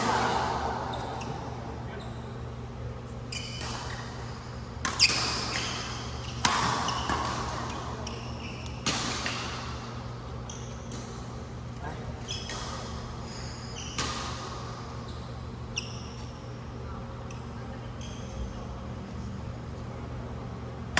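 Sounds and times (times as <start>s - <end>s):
steady low hum: 0.0s - 20.9s
shoe squeaks: 0.8s - 2.6s, 3.2s - 7.1s, 7.9s - 8.8s, 12.2s - 14.0s, 15.0s - 16.6s, 17.9s - 18.6s
racket hitting shuttlecock: 4.8s - 7.8s.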